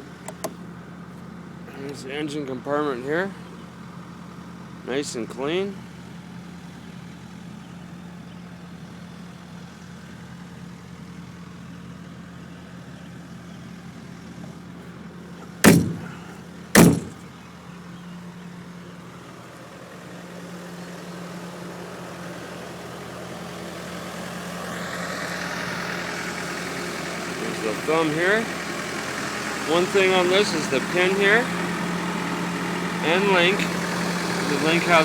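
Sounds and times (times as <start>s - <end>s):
diesel excavator engine idling: 0.0s - 2.2s, 11.2s - 17.7s, 20.4s - 35.0s
sharp loud knocks: 15.6s - 17.3s.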